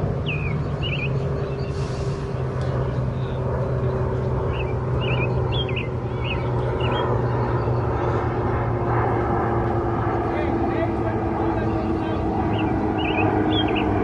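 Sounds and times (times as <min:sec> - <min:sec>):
low mechanical hum: 0:00.0 - 0:14.0
small bird chirping: 0:00.2 - 0:01.8, 0:04.5 - 0:07.9, 0:12.4 - 0:14.0.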